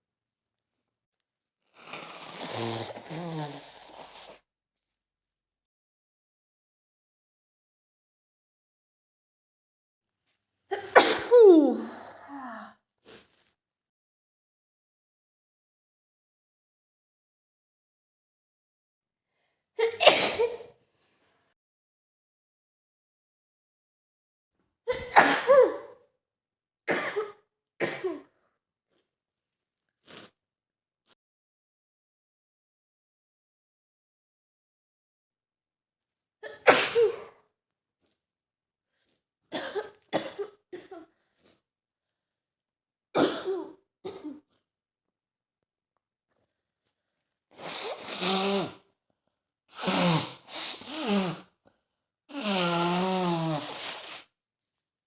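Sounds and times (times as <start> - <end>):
short sniff: 1.8 - 4.4, 47.6 - 48.8, 49.7 - 51.4, 52.3 - 54.3
woman coughing: 10.7 - 11.8, 19.8 - 20.6, 24.9 - 25.9, 26.9 - 28.3, 36.5 - 37.3, 43.2 - 44.4
woman sneezing: 10.7 - 12.6, 19.8 - 20.7, 24.9 - 26.0, 36.4 - 37.3.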